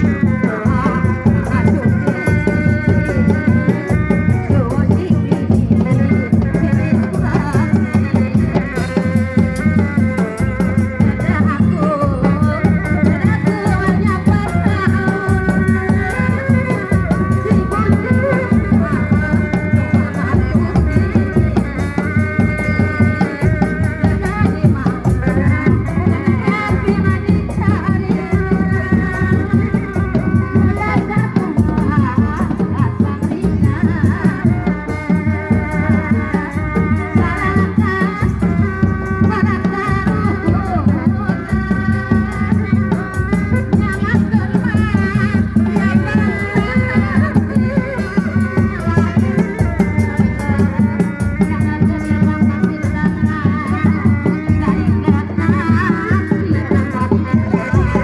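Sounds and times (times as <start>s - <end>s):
fast drumming: 0.0s - 58.0s
high wavering melody: 0.0s - 58.0s
rattling percussion: 0.0s - 58.0s
ornamented high melody: 53.4s - 58.0s.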